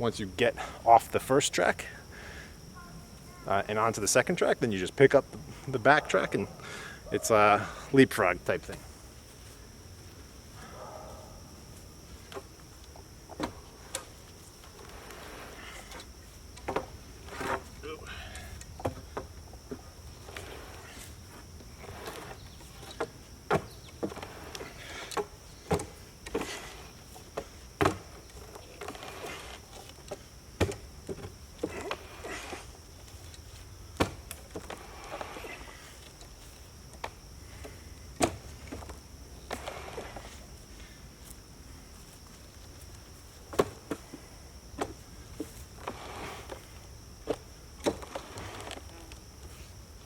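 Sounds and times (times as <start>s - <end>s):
high insect drone: 0.0s - 50.0s
rock sled scraping: 14.8s - 16.0s, 20.1s - 22.8s, 28.6s - 29.9s, 45.8s - 46.6s.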